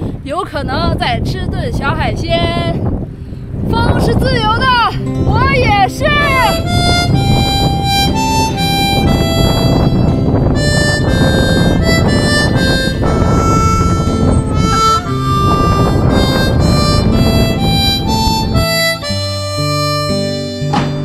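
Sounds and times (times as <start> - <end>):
background music: 4.8 - 21.0.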